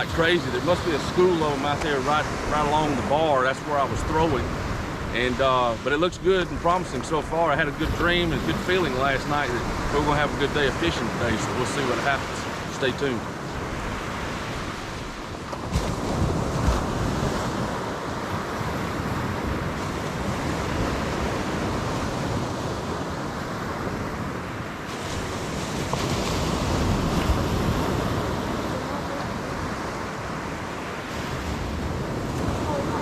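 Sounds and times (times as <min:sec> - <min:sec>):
ocean surf on beach: 0:00.0 - 0:33.0
wind buffeting microphone: 0:13.2 - 0:33.0.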